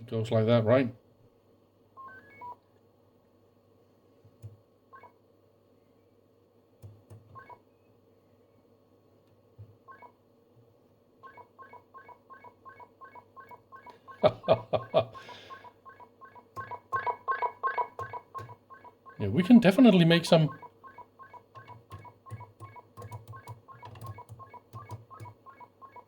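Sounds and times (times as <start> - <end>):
electronic tone beeps: 2.0 - 2.6, 11.2 - 14.6, 20.5 - 26.0
clicks: 18.0 - 18.6, 21.5 - 25.6.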